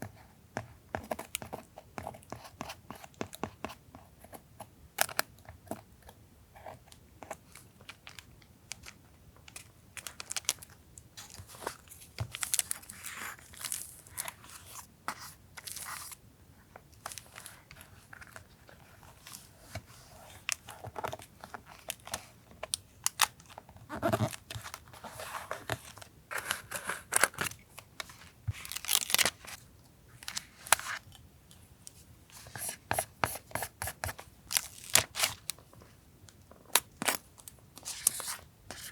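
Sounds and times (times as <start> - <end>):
paper crinkling and tearing: 34.5 - 35.5.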